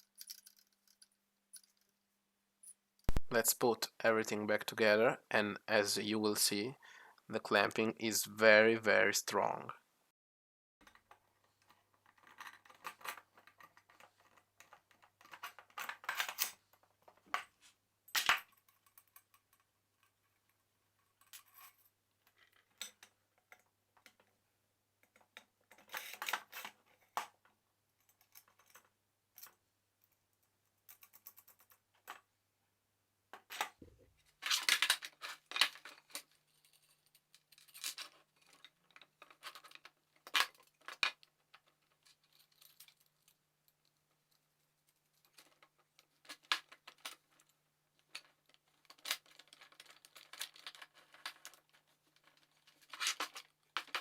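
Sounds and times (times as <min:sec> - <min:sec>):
metal parts clinking: 0:00.0 - 0:01.9.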